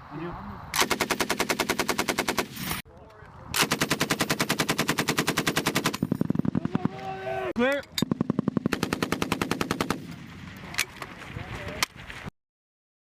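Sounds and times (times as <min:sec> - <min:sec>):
machine gun firing bursts: 0:00.8 - 0:02.6, 0:03.6 - 0:07.0, 0:08.0 - 0:10.2.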